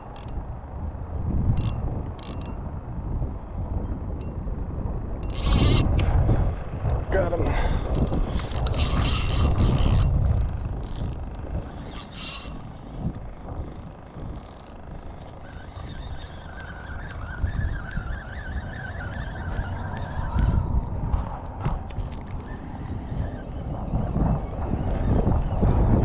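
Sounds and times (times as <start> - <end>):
fishing reel cranking: 0.0 - 0.6, 1.4 - 2.7, 5.2 - 6.1, 7.9 - 20.7
wind rumbling on microphone: 0.0 - 26.0
clicks and scrapes: 5.2 - 6.1, 7.9 - 15.5
faint wavering whine: 11.0 - 21.4.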